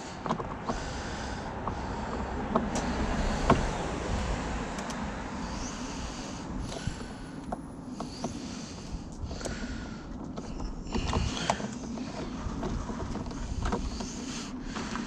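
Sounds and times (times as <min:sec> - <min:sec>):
tools tapping car door panel: 0:00.0 - 0:00.9, 0:01.5 - 0:04.1
background rumble and hiss: 0:00.0 - 0:15.0.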